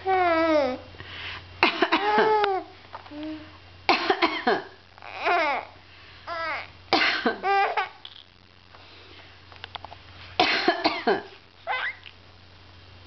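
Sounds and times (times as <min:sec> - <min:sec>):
short coughs: 0:10.4 - 0:11.3
baby laughing squeals: 0:11.7 - 0:12.1.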